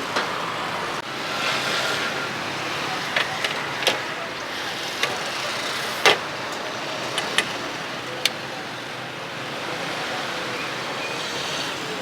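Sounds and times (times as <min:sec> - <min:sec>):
passing traffic: 0:00.0 - 0:12.0
sharp knocks or clicks: 0:03.1 - 0:04.1, 0:06.0 - 0:07.7.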